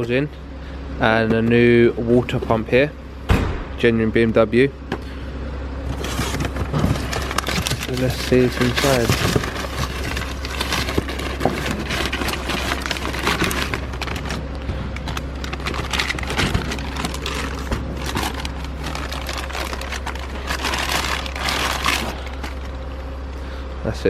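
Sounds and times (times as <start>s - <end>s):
steady low hum: 0.0s - 24.0s
packaging crinkling and rustling: 5.8s - 23.2s.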